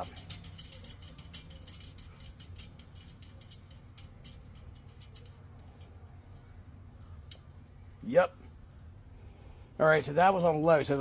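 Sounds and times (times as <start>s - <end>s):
fan ticking: 0.0s - 7.8s.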